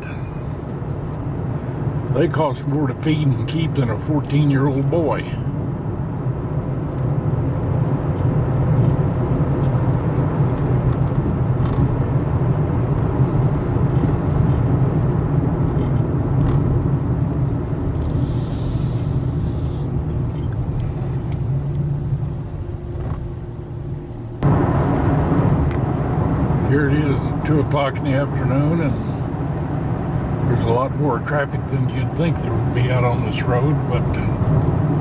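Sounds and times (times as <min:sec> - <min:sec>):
car engine rumble: 0:00.0 - 0:35.0
road noise: 0:00.0 - 0:35.0
short hiss: 0:18.0 - 0:20.0.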